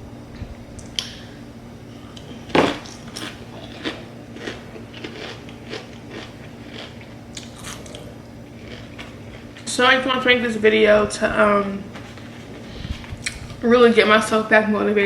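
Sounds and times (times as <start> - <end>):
person biting crunchy food: 2.0 - 9.6
crunching chews: 2.0 - 9.7.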